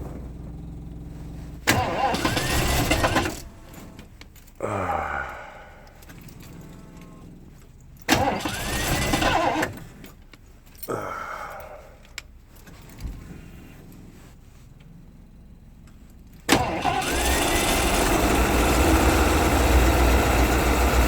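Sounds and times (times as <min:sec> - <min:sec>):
engine cranking on starter: 0:00.0 - 0:04.5, 0:05.3 - 0:10.3, 0:16.4 - 0:21.0.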